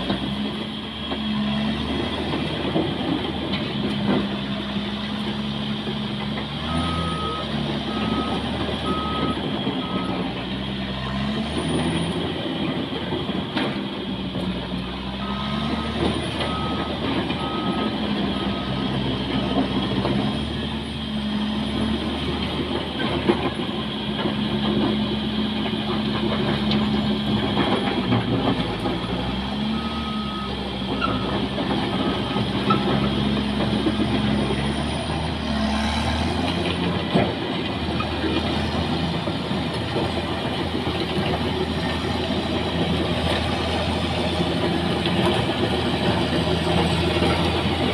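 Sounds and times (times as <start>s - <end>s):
bulldozer diesel engine: 0.0s - 47.9s
reversing alarm beeping: 6.6s - 10.3s, 15.2s - 18.9s, 29.0s - 32.9s.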